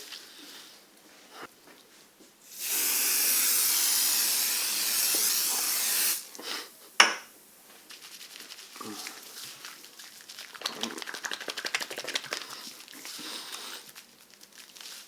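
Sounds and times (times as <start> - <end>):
spray hissing: 2.5 - 6.3.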